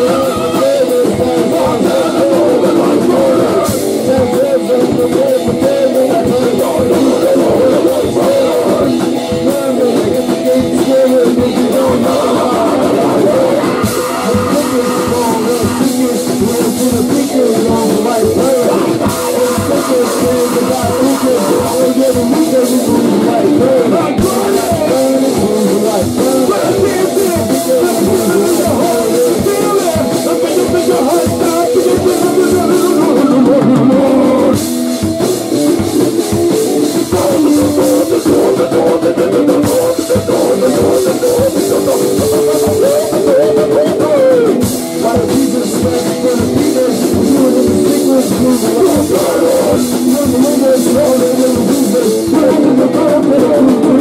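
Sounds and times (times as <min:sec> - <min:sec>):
rock music with drums and guitar: 0:00.0 - 0:54.0.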